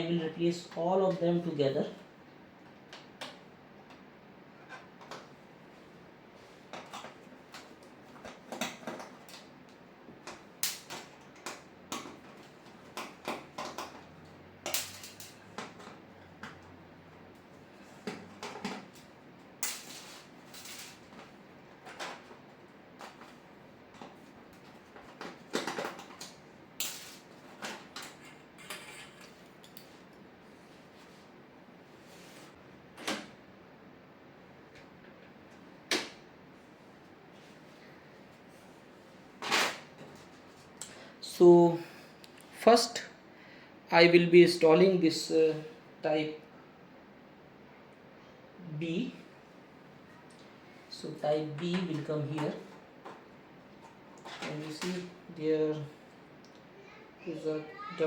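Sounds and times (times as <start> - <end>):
hard parts clicking and clinking: 10.3 - 16.6, 24.0 - 29.9.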